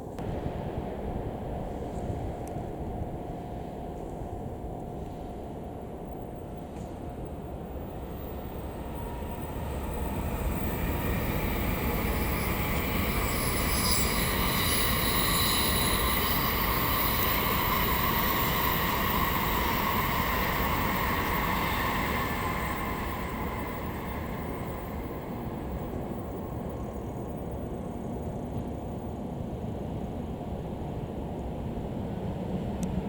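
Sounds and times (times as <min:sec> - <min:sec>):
diesel train passing: 0:07.2 - 0:33.0.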